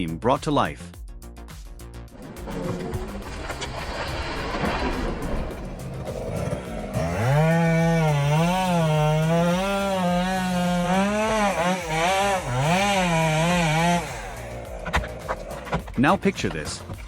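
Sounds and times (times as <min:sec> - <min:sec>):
chainsaw running at high revs: 0:05.8 - 0:16.1.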